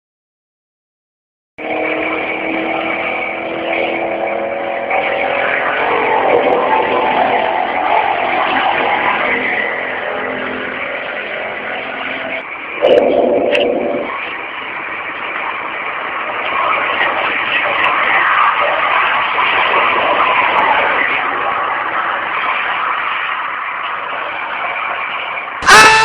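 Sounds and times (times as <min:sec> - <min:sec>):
dense rumbling noise: 0:12.4 - 0:15.2.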